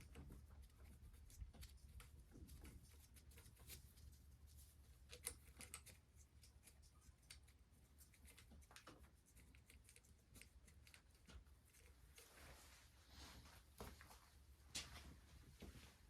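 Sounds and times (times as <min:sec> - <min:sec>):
faint clicks and taps: 0:05.0 - 0:12.4.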